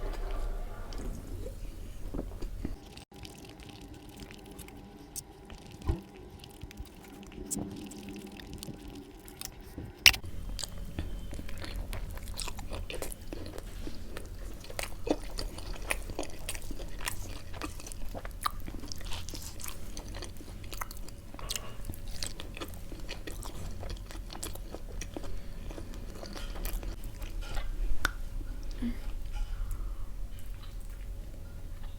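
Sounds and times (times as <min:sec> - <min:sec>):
steady low hum: 0:00.0 - 0:02.8, 0:10.0 - 0:31.9
person chewing crunchy food: 0:02.0 - 0:31.2.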